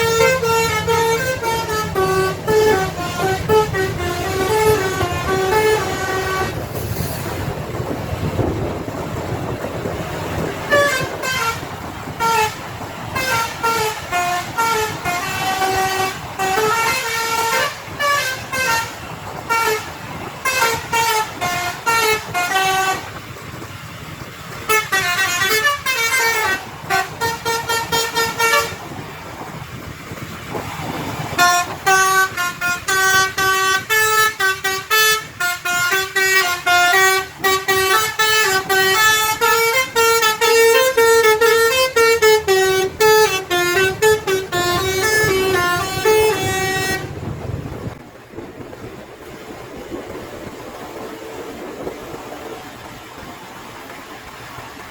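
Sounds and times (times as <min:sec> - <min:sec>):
multi-note air horn tune: 0:00.0 - 0:07.4, 0:10.6 - 0:23.1, 0:24.7 - 0:28.8, 0:31.4 - 0:47.2
low engine rumble: 0:00.0 - 0:54.9.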